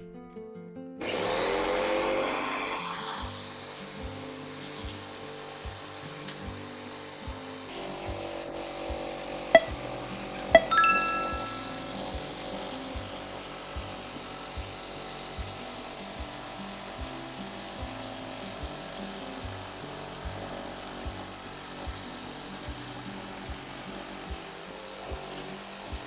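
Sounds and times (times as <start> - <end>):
steady slow beat: 9.6 - 12.3.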